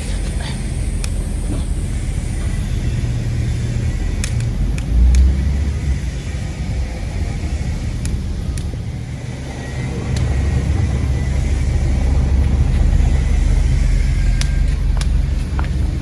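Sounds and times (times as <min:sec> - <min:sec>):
wind rumbling on microphone: 0:00.0 - 0:16.0.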